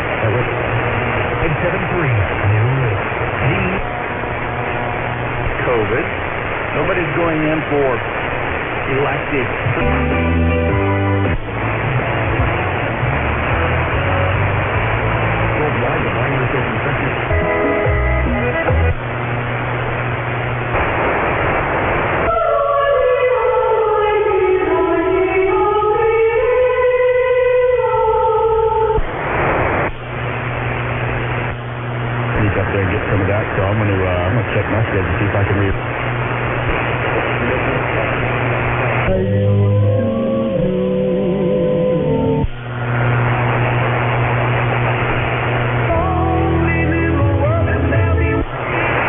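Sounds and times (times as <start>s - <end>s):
radio static hiss: 0.0s - 49.0s
steady hum: 0.0s - 49.0s
music on radio: 0.1s - 26.2s, 32.3s - 49.0s
muffled guitar music: 9.6s - 16.5s, 17.1s - 20.0s, 39.0s - 45.0s, 45.6s - 49.0s.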